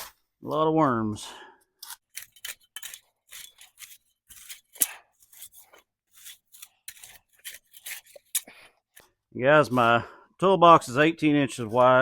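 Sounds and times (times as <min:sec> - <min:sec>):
hand tool scraping soil: 0:01.8 - 0:08.5.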